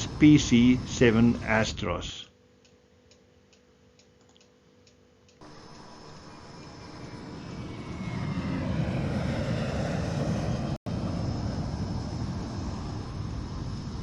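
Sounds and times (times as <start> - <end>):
faint falling whine: 0.0 - 14.0
aircraft engine rumble: 5.4 - 14.0.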